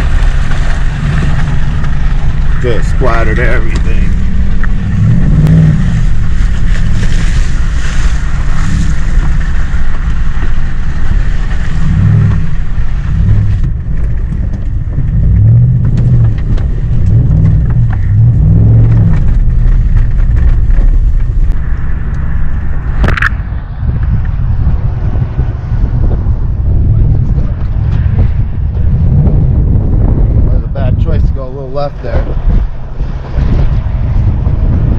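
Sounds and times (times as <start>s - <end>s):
pickup truck engine revving: 0.0s - 23.5s
heavy low rumble: 0.0s - 34.9s.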